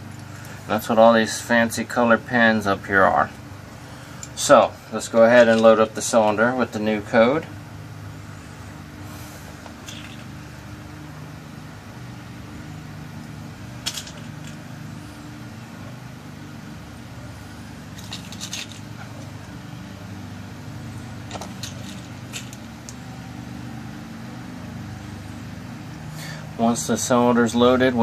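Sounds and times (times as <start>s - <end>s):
steady low hum: 0.0s - 28.0s
small metal pins clicking: 13.8s - 14.6s, 18.0s - 19.6s, 21.3s - 23.0s.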